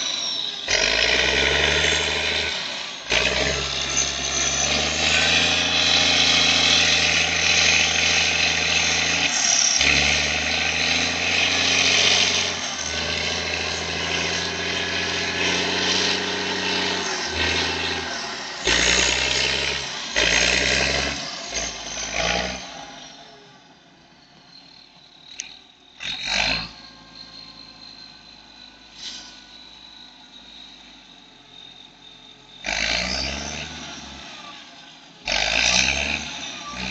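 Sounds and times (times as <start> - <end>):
diesel engine revving: 0.0 - 36.9
turbocharger whistling: 0.0 - 36.9.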